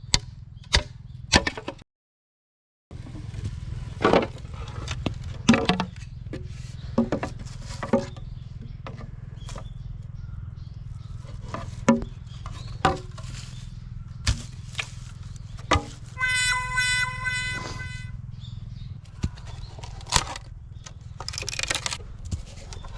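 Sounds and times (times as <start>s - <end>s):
held pitched tone: 16.2s - 18.1s.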